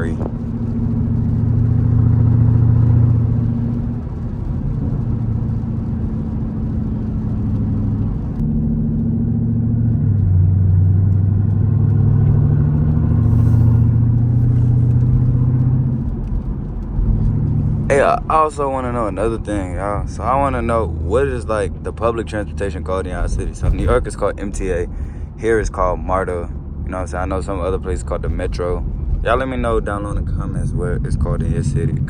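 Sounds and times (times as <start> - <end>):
car engine running while driving: 0.0 - 32.0.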